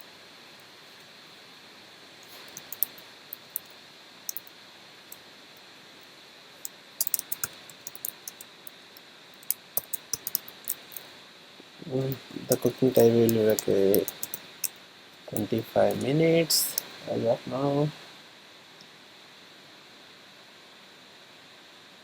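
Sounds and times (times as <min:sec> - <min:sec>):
faint hiss: 0:00.0 - 0:22.0
keyboard key clicks: 0:09.5 - 0:10.8, 0:12.5 - 0:14.4.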